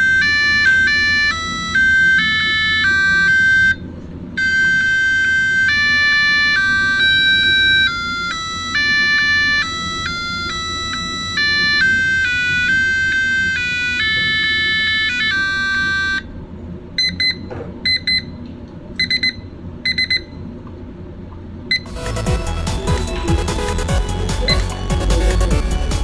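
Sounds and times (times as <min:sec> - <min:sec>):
alarm clock electronic melody: 0:00.0 - 0:03.8, 0:04.4 - 0:16.2, 0:21.9 - 0:26.0
short double beeps: 0:19.0 - 0:20.4
louder electronic tune: 0:21.8 - 0:26.0.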